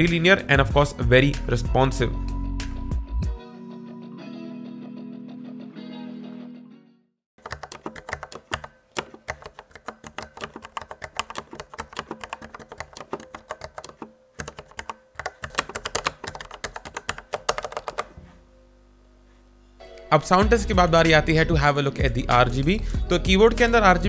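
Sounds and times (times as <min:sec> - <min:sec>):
mechanical keyboard typing: 0:07.4 - 0:18.6.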